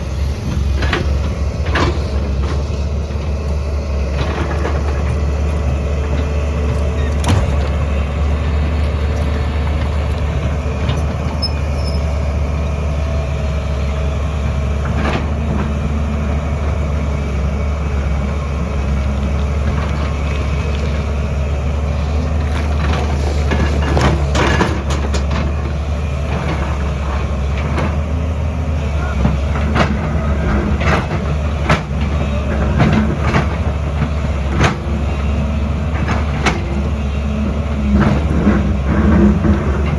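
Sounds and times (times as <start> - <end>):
excavator engine droning: 0.0 - 39.9
metal knocks and clanks: 6.6 - 12.0.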